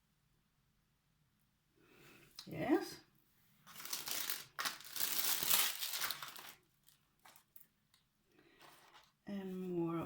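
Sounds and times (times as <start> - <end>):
packaging wrap crinkling: 3.7 - 7.7.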